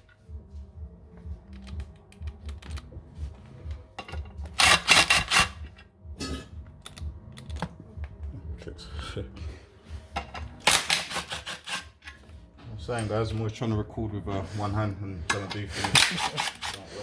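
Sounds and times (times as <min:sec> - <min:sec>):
hand tools clicking and knocking: 0:04.0 - 0:05.8, 0:15.3 - 0:16.9
rapid metallic ratchet clicks: 0:04.6 - 0:05.7.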